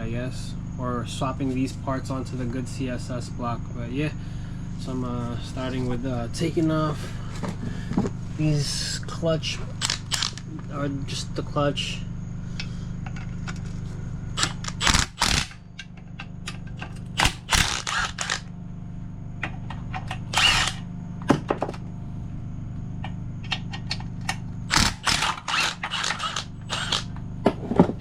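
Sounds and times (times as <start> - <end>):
power tool bursts: 9.7 - 10.5, 14.4 - 15.7, 17.2 - 18.5, 20.2 - 20.9, 24.7 - 27.2
tools clicking and clanking: 9.8 - 10.5.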